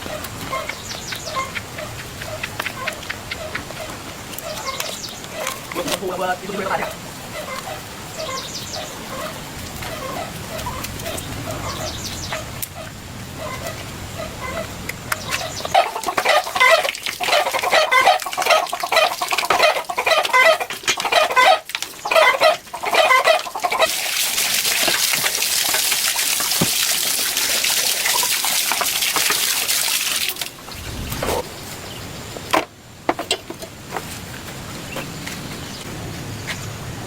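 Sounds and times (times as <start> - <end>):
chickens clucking: 0.0 - 24.0, 30.3 - 32.0.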